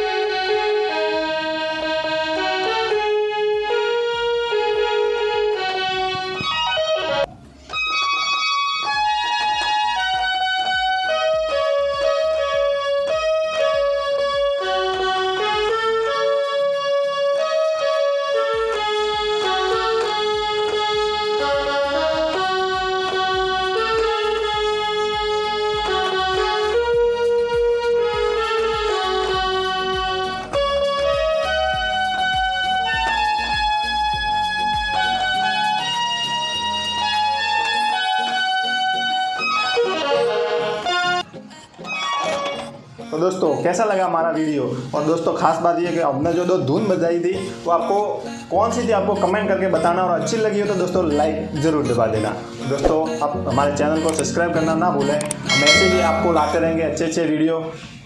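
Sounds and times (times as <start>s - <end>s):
toy keyboard playing a simple tune: 0.0s - 43.1s, 55.0s - 56.9s.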